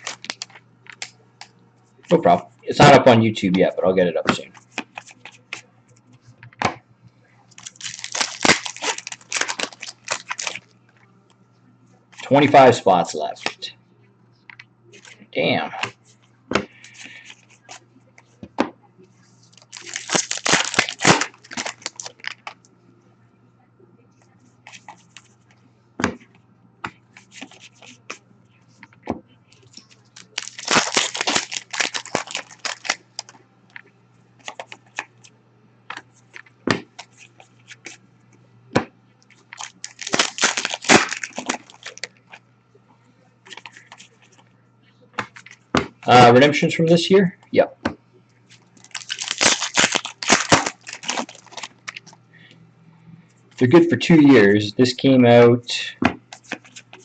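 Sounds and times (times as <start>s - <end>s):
foil wrappers tearing and crinkling: 0.0s - 1.1s, 7.6s - 10.6s, 19.5s - 22.6s, 29.7s - 33.4s, 39.4s - 42.2s, 48.5s - 52.2s.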